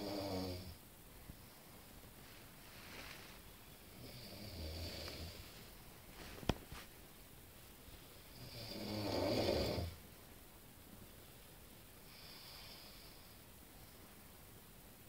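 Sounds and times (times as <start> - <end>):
person snoring: 0.0 - 0.8, 3.9 - 5.4, 8.3 - 10.0.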